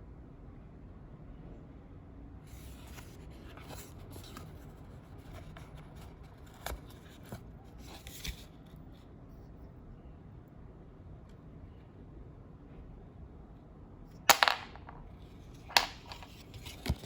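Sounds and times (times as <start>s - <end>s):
packaging rustling and scraping: 15.5s - 17.0s.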